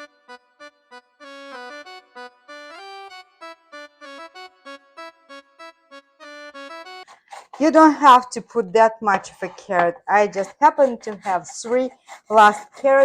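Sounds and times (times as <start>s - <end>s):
light instrumental melody: 0.0s - 8.4s.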